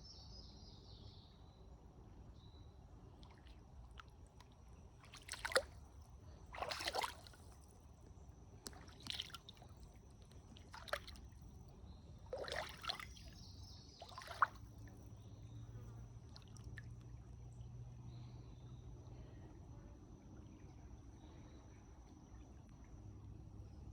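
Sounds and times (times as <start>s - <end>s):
water splashing and sloshing: 3.2s - 15.1s, 16.2s - 17.2s.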